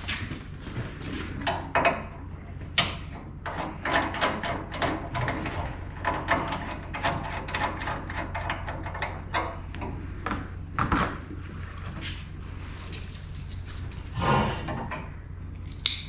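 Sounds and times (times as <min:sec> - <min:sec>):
steady low hum: 0:00.0 - 0:16.0
wire scraping through pipe: 0:02.8 - 0:09.7.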